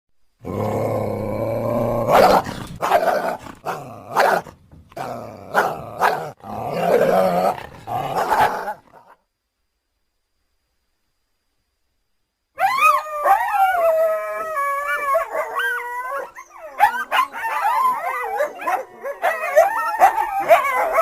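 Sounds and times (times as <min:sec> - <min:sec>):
coyotes yipping and howling: 0:12.6 - 0:21.0.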